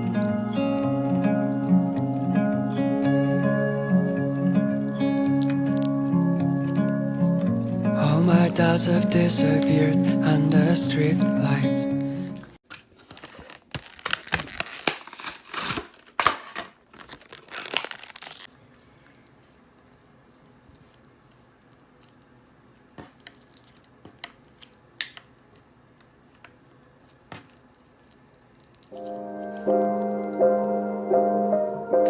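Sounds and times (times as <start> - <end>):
plastic packaging crinkling and tearing: 12.6 - 25.2, 26.0 - 30.5.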